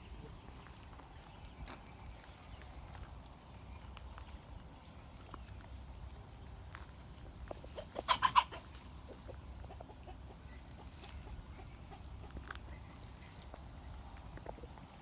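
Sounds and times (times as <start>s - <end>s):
pitched animal calls: 7.8s - 8.7s.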